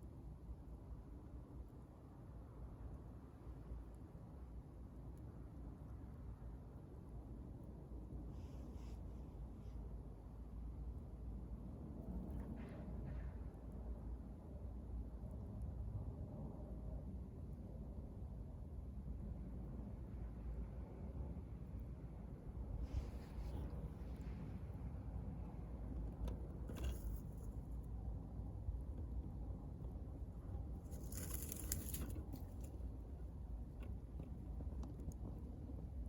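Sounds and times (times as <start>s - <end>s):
low steady rumble: 0.0s - 36.0s
fire crackles: 30.8s - 32.7s.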